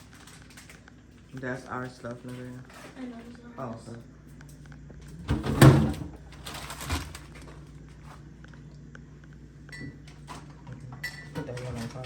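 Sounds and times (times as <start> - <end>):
groceries rustling: 0.0 - 8.6
refrigerator hum: 0.0 - 12.0.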